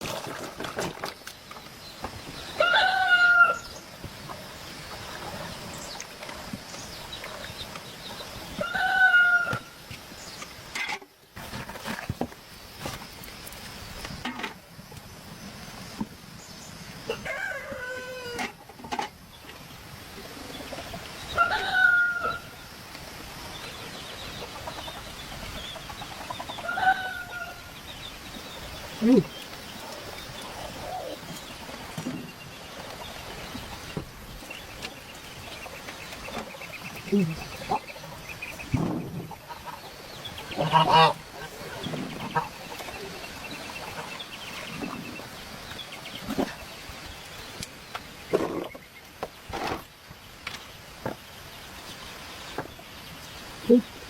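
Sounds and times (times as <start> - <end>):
rooster crowing: 2.6 - 3.7, 8.6 - 9.7, 17.1 - 18.5, 21.4 - 22.5, 26.6 - 27.7.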